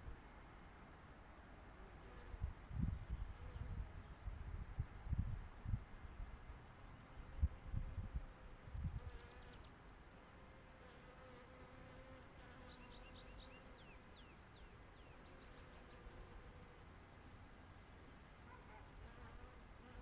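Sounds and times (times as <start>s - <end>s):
wind buffeting microphone: 2.4s - 6.3s.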